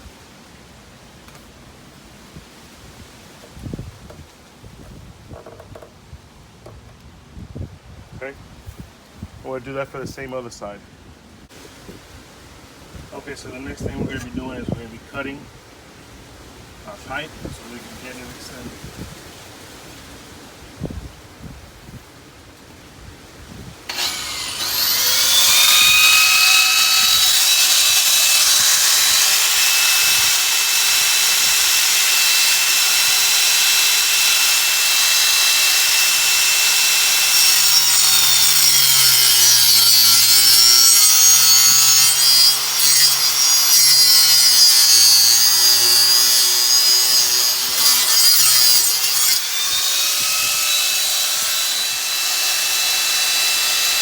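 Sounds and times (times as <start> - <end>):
power saw cutting pipe: 23.9 - 54.0.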